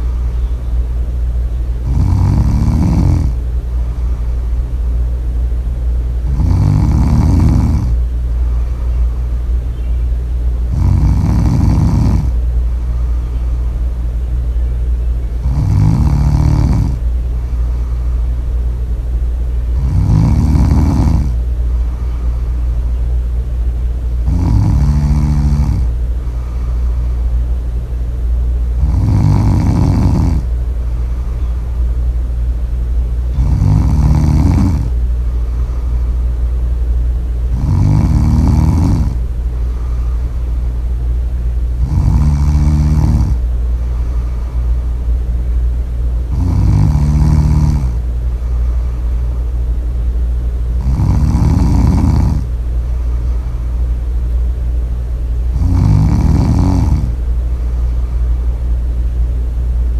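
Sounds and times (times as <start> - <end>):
steady low hum: 0.0 - 59.9
loud slow snoring: 1.8 - 3.4, 6.2 - 8.0, 10.7 - 13.1, 15.4 - 18.2, 19.7 - 22.6, 24.2 - 27.2, 28.8 - 31.6, 33.3 - 36.2, 37.5 - 40.6, 41.8 - 45.0, 46.3 - 49.3, 50.7 - 53.8, 55.4 - 58.1.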